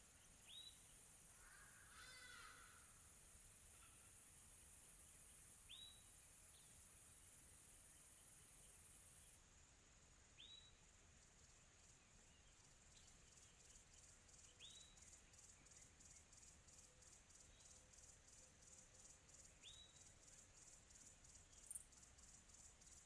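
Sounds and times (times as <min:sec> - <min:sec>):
crickets chirring: 0:12.6 - 0:23.0.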